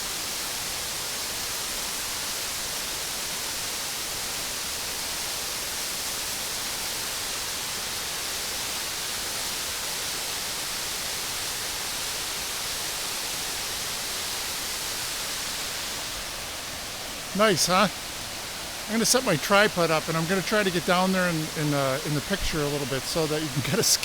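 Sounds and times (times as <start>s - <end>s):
waterfall rushing: 14.3s - 24.0s.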